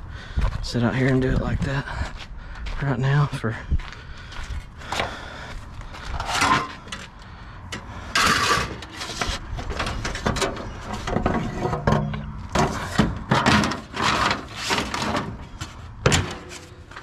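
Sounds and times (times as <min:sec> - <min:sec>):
junk clattering in a dumpster: 0:08.2 - 0:17.0.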